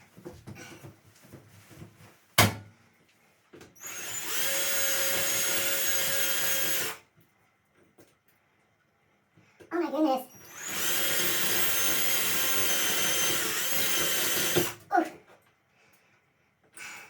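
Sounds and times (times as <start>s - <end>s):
power drill running: 3.8s - 7.0s, 10.3s - 14.8s.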